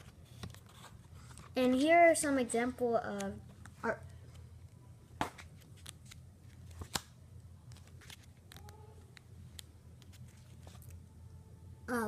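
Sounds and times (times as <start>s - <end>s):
paper pages rustling: 0.0s - 1.6s, 7.7s - 8.8s, 10.0s - 11.0s
faint low room hum: 0.0s - 12.0s.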